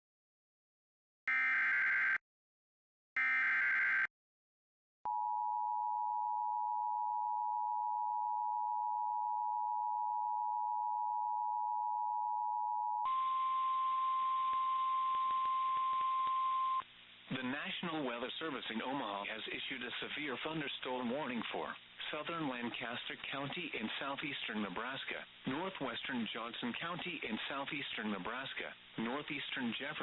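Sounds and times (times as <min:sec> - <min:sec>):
single-tone warning alarm: 0:01.3 - 0:02.2, 0:03.2 - 0:04.1, 0:05.1 - 0:16.8
two-tone attention signal: 0:13.1 - 0:16.8.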